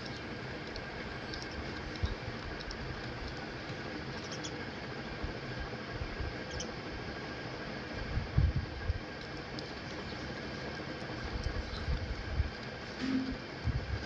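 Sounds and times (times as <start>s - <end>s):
small birds chirping: 0.0s - 0.4s, 1.1s - 3.4s, 4.1s - 4.9s, 6.4s - 6.8s, 9.7s - 12.0s
steady background hiss: 9.0s - 14.0s.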